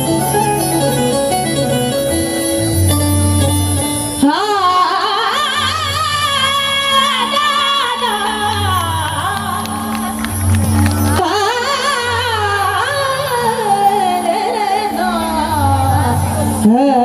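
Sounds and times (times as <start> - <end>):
keyboard notes: 0.0 - 17.0
wordless singing with vibrato: 4.2 - 9.9, 11.0 - 17.0.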